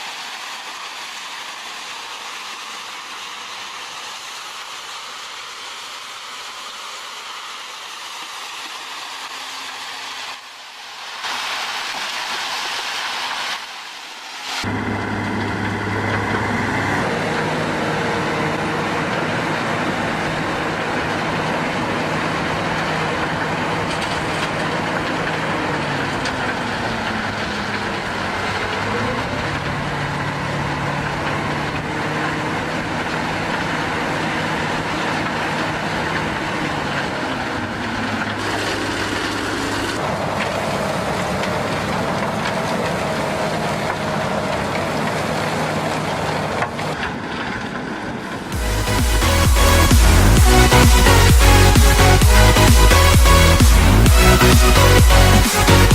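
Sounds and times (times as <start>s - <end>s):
heavy construction machinery running: 14.6s - 55.9s.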